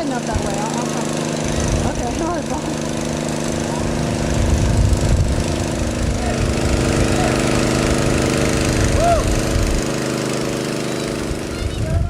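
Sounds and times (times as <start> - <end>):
airboat engine running: 0.0 - 12.0
wind on microphone: 3.8 - 7.2, 8.7 - 9.8, 11.2 - 12.0.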